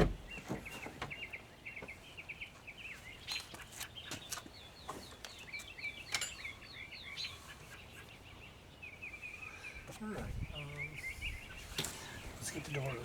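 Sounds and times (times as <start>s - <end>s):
songbird chirping: 0.0s - 13.0s.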